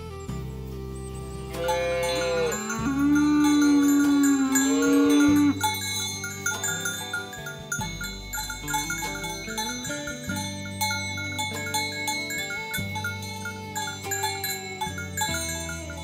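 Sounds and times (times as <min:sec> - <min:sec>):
music with chime-like notes: 0:00.0 - 0:16.0
cow mooing: 0:01.2 - 0:07.2.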